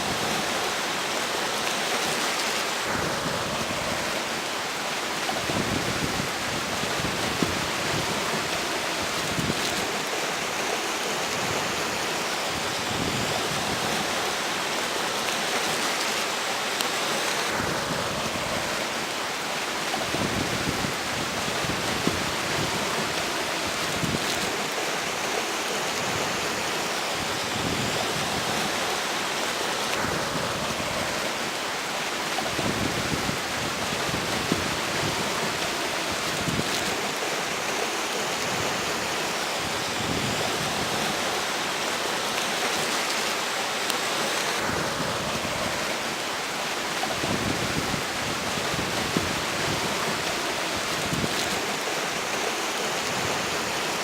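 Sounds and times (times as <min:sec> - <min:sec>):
river water rushing: 0:00.0 - 0:54.0
wind buffeting microphone: 0:05.3 - 0:10.0, 0:19.9 - 0:24.7, 0:32.3 - 0:37.2, 0:47.0 - 0:51.8.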